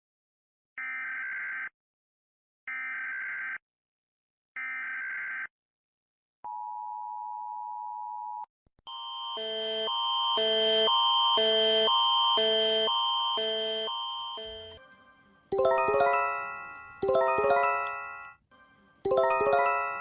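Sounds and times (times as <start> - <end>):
multi-tone alarm: 8.9 - 18.4, 19.1 - 20.0.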